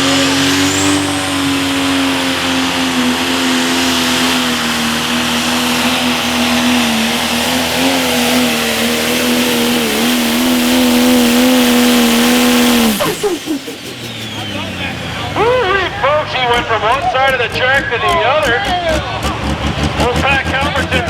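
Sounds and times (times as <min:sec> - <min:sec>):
diesel engine at full throttle: 0:00.0 - 0:21.0
turbo hiss: 0:08.1 - 0:18.8.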